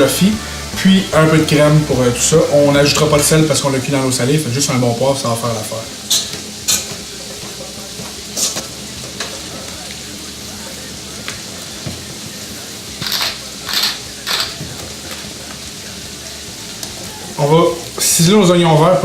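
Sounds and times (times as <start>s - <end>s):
meat and vegetables sizzling: 0.0s - 19.0s.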